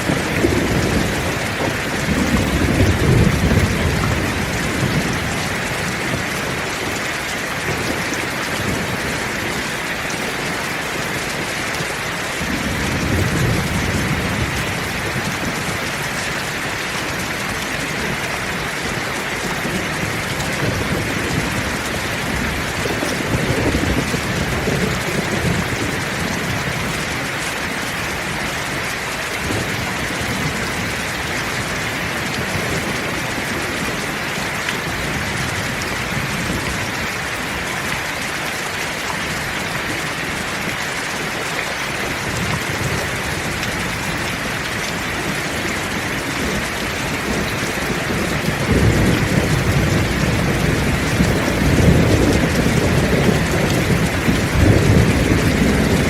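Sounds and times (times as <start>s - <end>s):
thunder rumbling: 0.0s - 7.0s, 12.4s - 27.2s, 42.0s - 56.0s
heavy rain: 0.0s - 56.0s.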